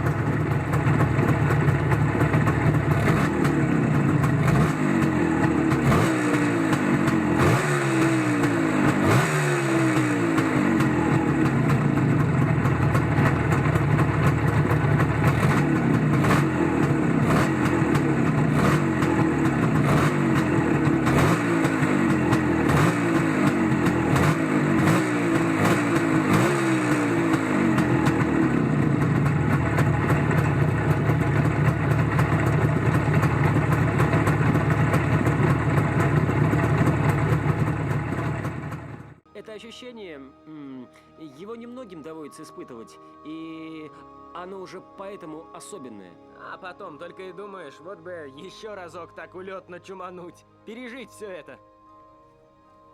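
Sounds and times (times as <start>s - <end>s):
motorcycle engine revving: 0.0s - 39.3s.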